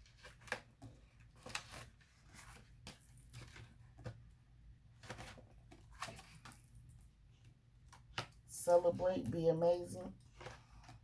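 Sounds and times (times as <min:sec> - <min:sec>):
paper rustling and tapping: 0:00.0 - 0:06.6.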